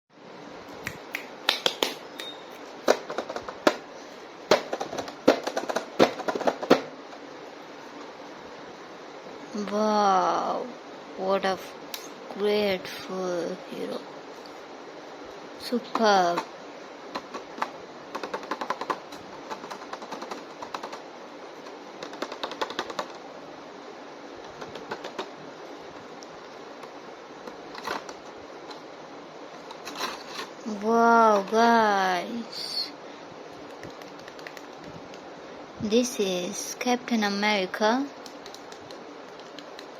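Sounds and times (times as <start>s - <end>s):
background hiss: 0.2s - 39.9s
plastic toys clicking and tapping: 4.5s - 6.9s, 17.1s - 21.0s, 21.6s - 23.2s, 24.5s - 25.3s, 33.6s - 34.9s.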